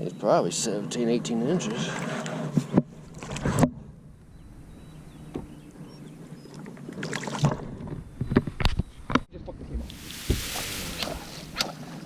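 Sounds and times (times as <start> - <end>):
knock or splash: 9.8 - 12.0.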